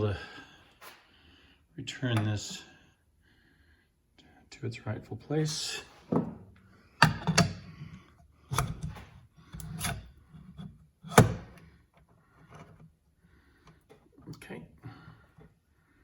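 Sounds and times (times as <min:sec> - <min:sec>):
mixer parts knocking and scraping: 0:06.0 - 0:13.0.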